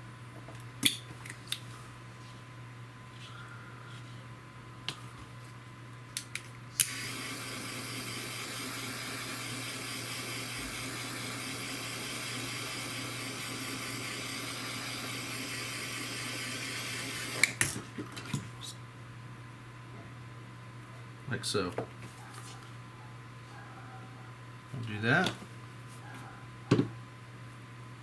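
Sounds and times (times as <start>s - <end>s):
torch igniter clicks: 6.1s - 8.2s, 13.5s - 17.8s
butane torch hissing: 6.8s - 17.7s.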